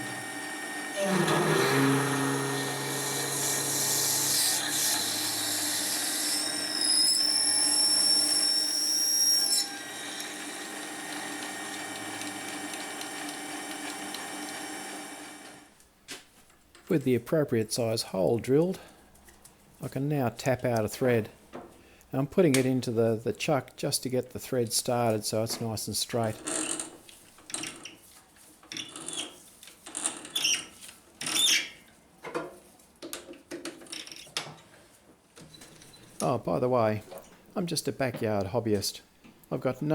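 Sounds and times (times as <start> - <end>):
metal lathe running: 0.0 - 15.6
high-pitched drill squeal: 0.8 - 9.9.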